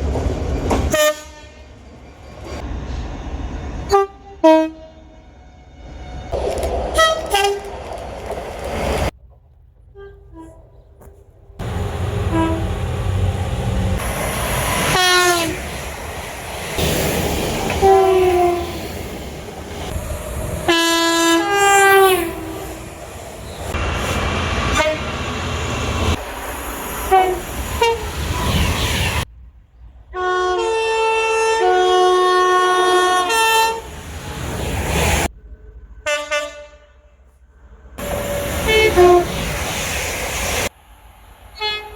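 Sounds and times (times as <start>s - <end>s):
train rumbling on rails: 0.0s - 41.9s
train horn blasts: 0.9s - 1.7s, 3.9s - 7.6s, 11.6s - 13.2s, 14.9s - 15.6s, 17.7s - 18.8s, 20.6s - 22.8s, 24.6s - 25.2s, 27.1s - 28.1s, 30.2s - 33.9s, 36.0s - 37.4s, 38.0s - 39.4s.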